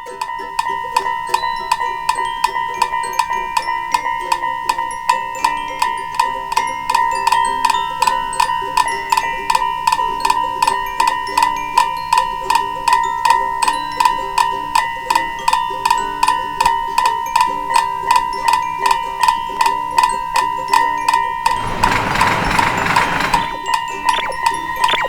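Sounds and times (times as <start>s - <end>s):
steady high tone: 21.5s - 25.0s.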